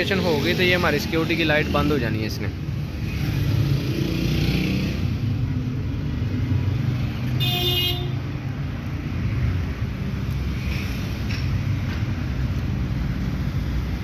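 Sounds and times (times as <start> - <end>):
traffic rumble: 0.0 - 14.0.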